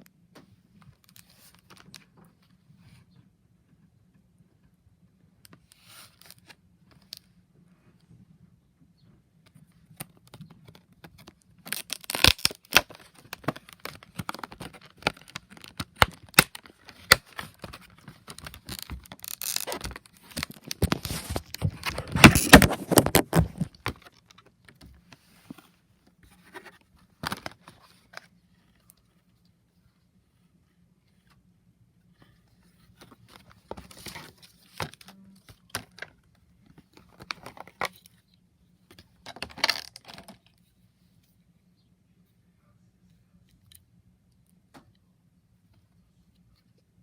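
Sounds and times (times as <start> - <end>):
packaging being opened: 10.4 - 24.3
cardboard and plastic tearing: 11.2 - 24.2.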